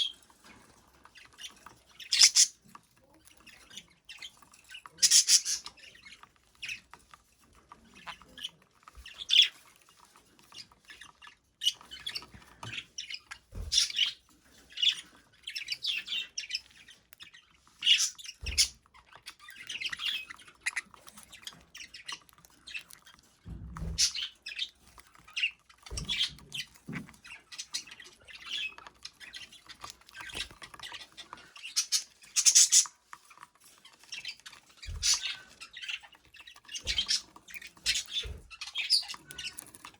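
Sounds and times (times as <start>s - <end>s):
budgerigar chirping: 2.0s - 2.6s, 5.0s - 5.7s, 17.8s - 18.8s, 31.7s - 32.9s, 34.9s - 36.0s, 36.8s - 39.6s.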